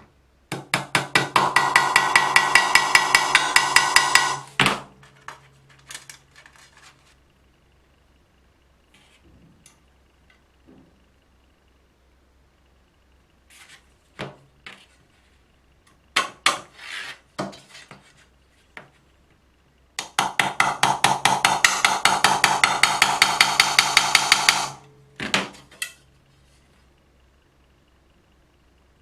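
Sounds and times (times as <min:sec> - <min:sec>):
sewing machine running: 0:01.3 - 0:04.6, 0:22.3 - 0:24.8.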